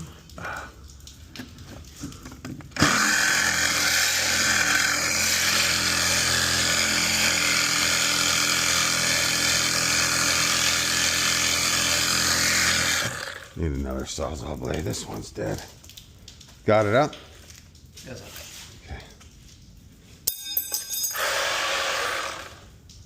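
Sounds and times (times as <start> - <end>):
reciprocating saw cutting steel pipe: 2.8 - 13.5, 21.1 - 22.6.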